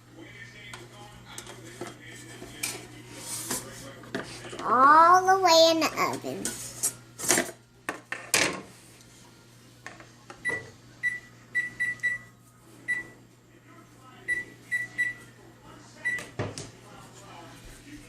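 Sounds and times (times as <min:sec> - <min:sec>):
keypad beeps: 0:10.4 - 0:12.3, 0:14.3 - 0:15.2.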